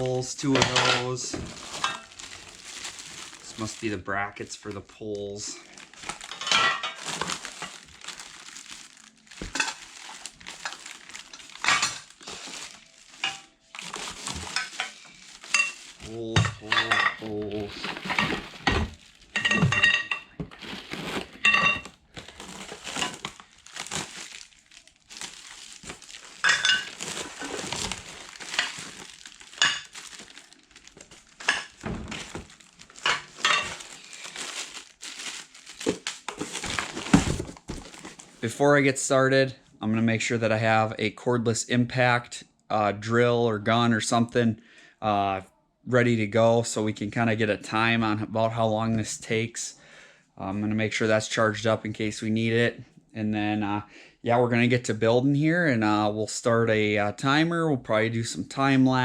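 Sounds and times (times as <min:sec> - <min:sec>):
plastic packaging crinkling: 0:00.0 - 0:38.5
metal poles clinking: 0:13.2 - 0:18.8, 0:19.4 - 0:20.4, 0:26.4 - 0:29.9, 0:33.0 - 0:33.8.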